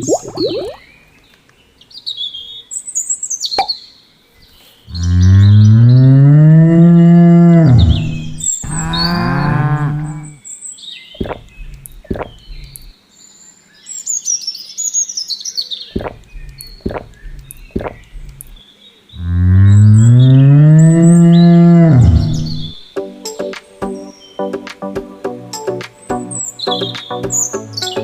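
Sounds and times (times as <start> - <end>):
small birds chirping: 0.0 - 6.3, 7.5 - 22.9
cow mooing: 4.9 - 10.4, 19.2 - 22.8.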